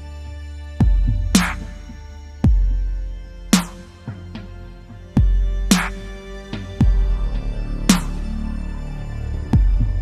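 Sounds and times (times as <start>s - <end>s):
background music with held tones: 0.0s - 10.0s
deep bass hit: 6.6s - 8.4s, 9.5s - 10.0s.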